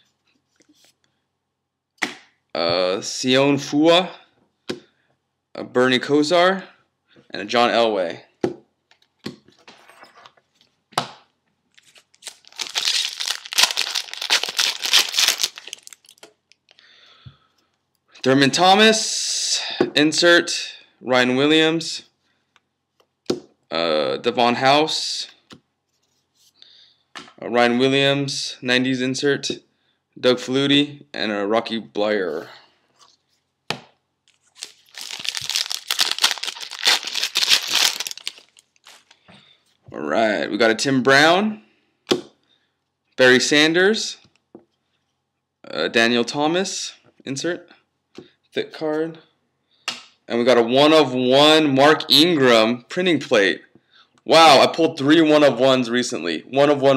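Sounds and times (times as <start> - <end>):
foil wrapper tearing and crinkling: 11.8 - 16.2, 34.3 - 39.2.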